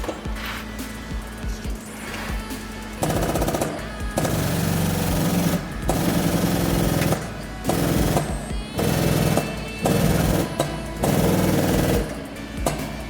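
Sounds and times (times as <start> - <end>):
pneumatic tool chattering: 3.0 - 13.0.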